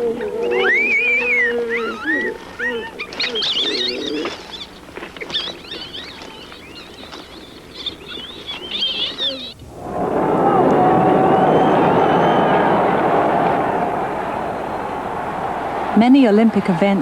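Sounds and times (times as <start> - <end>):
faint chirping calls: 0.0 - 9.7
high wavering animal calls: 0.0 - 15.7.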